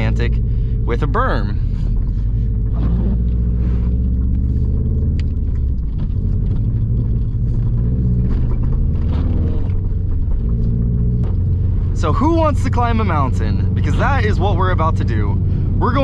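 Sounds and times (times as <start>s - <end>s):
car engine droning: 0.0s - 16.0s.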